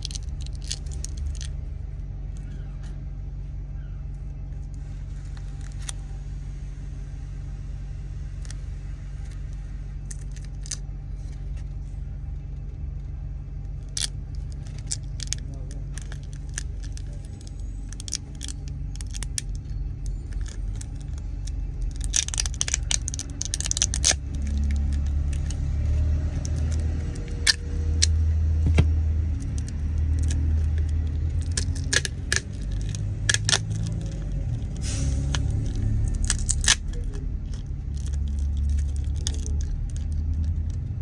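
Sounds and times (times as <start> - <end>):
low rumble: 0.0 - 41.0.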